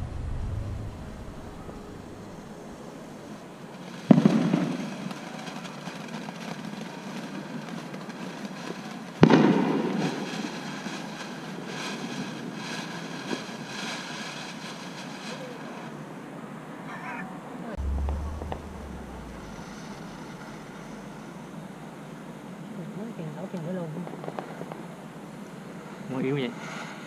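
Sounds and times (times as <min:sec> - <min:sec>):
firework bangs with rumble: 0:00.0 - 0:06.8, 0:09.2 - 0:10.8, 0:17.8 - 0:22.0.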